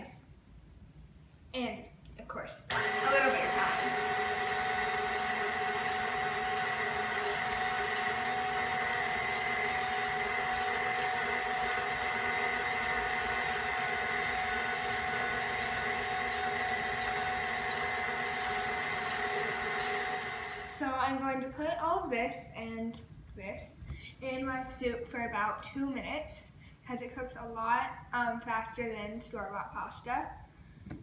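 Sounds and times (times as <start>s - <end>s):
pasta machine motor whining: 2.7s - 20.9s.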